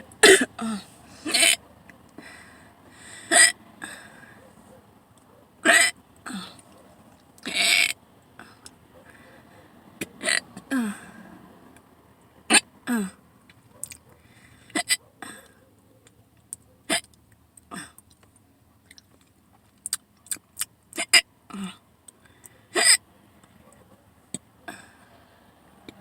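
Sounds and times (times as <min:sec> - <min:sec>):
person hiccuping: 0:00.2 - 0:01.6, 0:03.3 - 0:04.0, 0:05.6 - 0:06.6, 0:07.4 - 0:08.6, 0:10.1 - 0:11.0, 0:12.5 - 0:13.2, 0:14.7 - 0:15.6, 0:16.9 - 0:17.1, 0:17.7 - 0:18.0, 0:21.0 - 0:21.8, 0:22.8 - 0:23.0.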